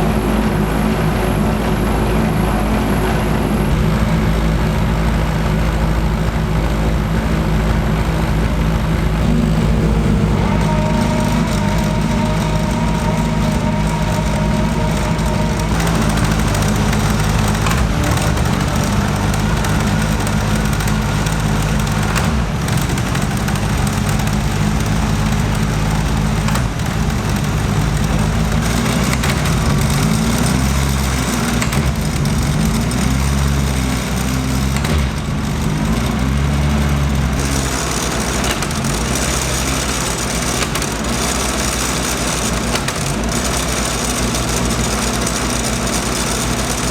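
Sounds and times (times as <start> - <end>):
race car engine running: 0.0 - 46.9.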